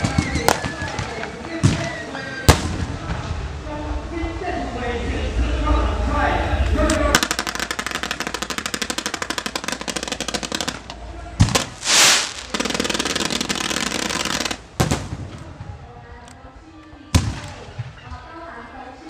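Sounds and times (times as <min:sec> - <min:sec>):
fireworks popping: 0:00.0 - 0:03.4, 0:06.8 - 0:16.3
firework bangs: 0:00.0 - 0:03.6, 0:07.0 - 0:16.0
firework crackle: 0:00.0 - 0:04.0, 0:06.8 - 0:16.2
firework whoosh: 0:06.8 - 0:15.3.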